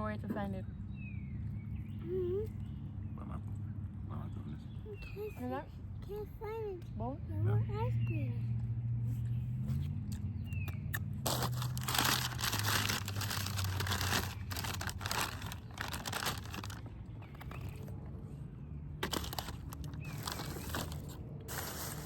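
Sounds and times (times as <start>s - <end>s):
food packaging crinkling: 11.2s - 17.8s, 19.0s - 22.0s.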